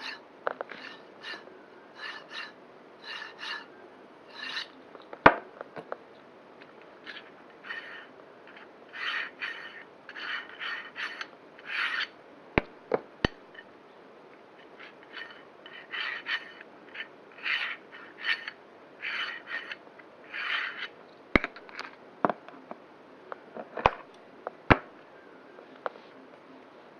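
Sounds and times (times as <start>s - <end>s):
rough bearing grinding: 0.0s - 3.7s, 4.3s - 4.8s, 7.0s - 12.2s, 14.6s - 21.0s.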